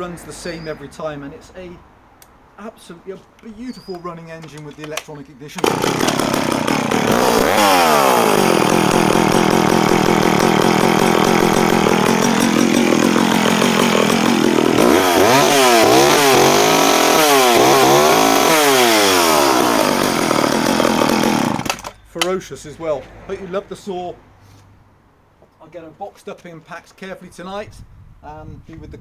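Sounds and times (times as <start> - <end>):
chainsaw engine revving: 5.6 - 22.0.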